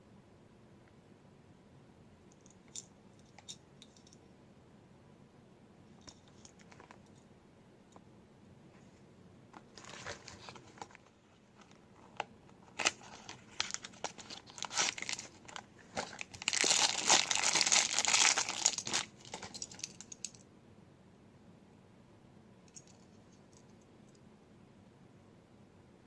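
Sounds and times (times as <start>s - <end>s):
packaging crinkling and tearing: 9.7s - 20.1s.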